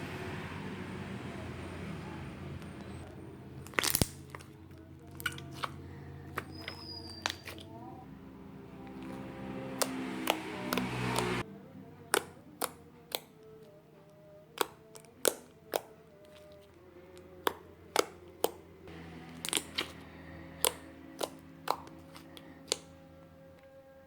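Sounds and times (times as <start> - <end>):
crunchy slime crackling: 3.0 - 7.7, 14.6 - 23.1.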